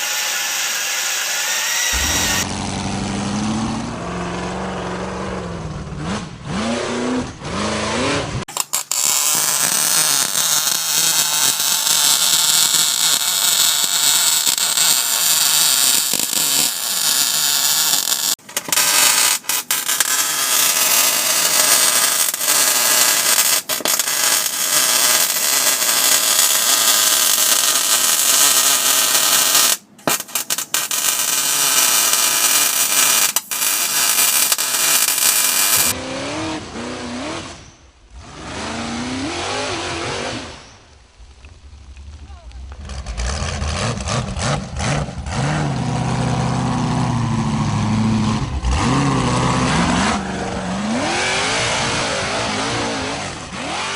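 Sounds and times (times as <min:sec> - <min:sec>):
metalworking power tools hissing: 0:00.0 - 0:02.5, 0:08.5 - 0:36.0
sound rising and falling in pitch: 0:01.6 - 0:05.6.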